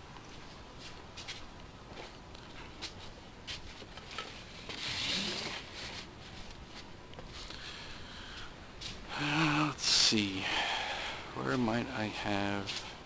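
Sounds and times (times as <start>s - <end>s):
rustling shuffling: 0.2s - 9.1s.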